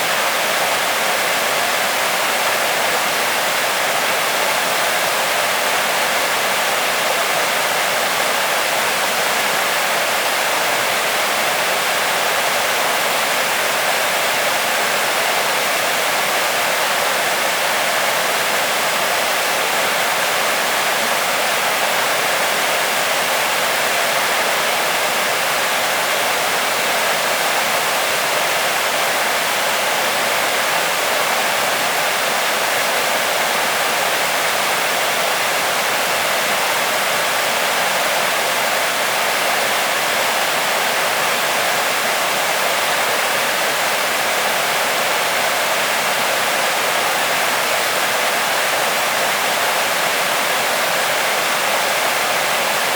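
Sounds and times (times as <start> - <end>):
waterfall rushing: 0.0 - 52.9.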